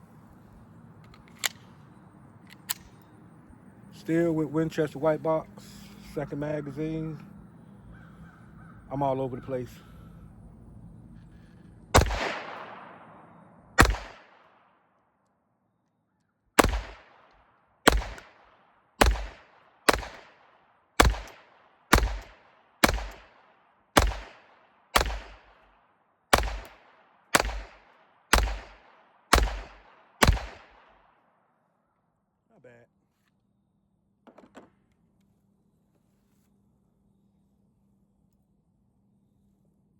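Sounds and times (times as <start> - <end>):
pistol shots with echo: 11.9 - 14.7, 16.6 - 25.6, 26.3 - 31.2.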